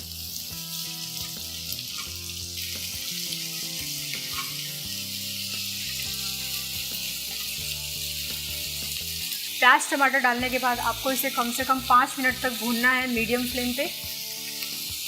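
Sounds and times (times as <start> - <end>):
onions and tomatoes sizzling in oil: 0.0 - 15.0.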